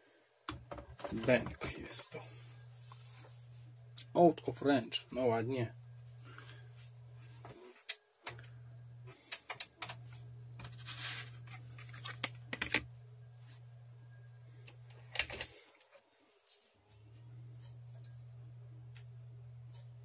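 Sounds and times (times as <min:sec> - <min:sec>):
low electrical hum: 0:00.1 - 0:20.0
clicks handling computer equipment: 0:09.3 - 0:10.0, 0:11.5 - 0:12.9, 0:14.6 - 0:15.9.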